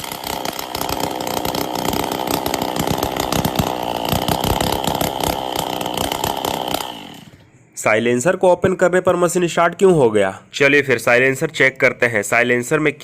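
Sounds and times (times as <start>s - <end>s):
brush cutter engine running: 0.0s - 7.4s.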